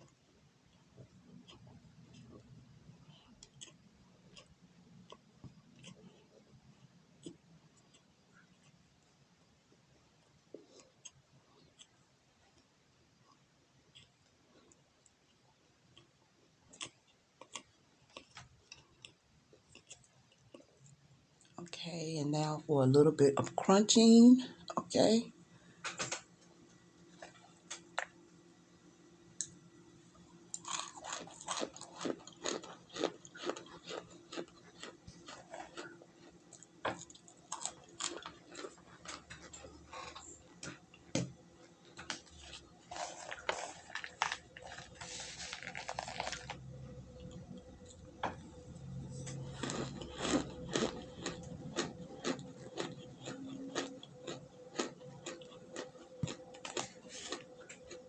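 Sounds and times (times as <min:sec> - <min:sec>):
crunchy chewing: 0:00.7 - 0:09.1, 0:13.3 - 0:21.6, 0:30.5 - 0:58.0.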